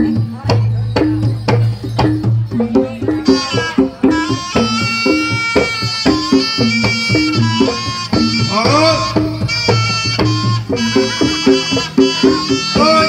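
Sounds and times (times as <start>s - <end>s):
hand drum strokes: 0.0s - 13.0s
wind instrument long notes: 3.1s - 13.0s.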